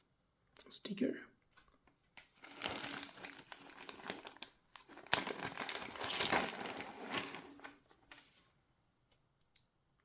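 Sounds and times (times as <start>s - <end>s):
packaging crinkling: 2.2s - 7.9s.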